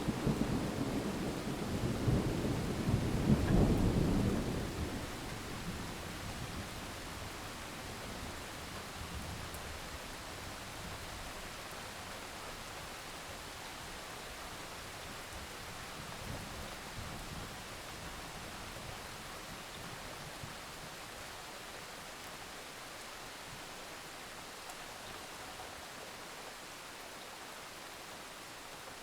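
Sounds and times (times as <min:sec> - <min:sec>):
steady rain hiss: 0:00.0 - 0:29.0.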